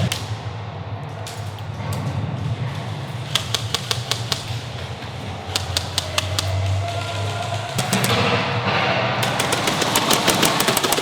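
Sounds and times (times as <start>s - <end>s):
low rumble: 0.0s - 3.4s.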